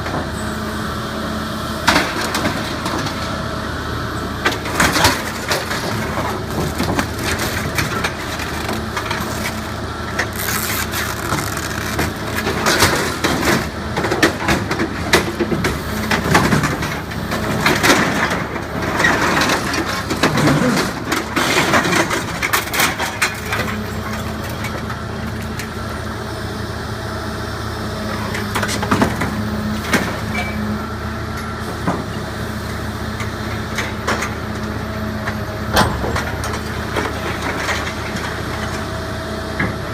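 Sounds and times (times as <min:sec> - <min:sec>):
diesel engine running: 0:00.0 - 0:39.9
scrap metal crunching and cracking: 0:04.5 - 0:25.6.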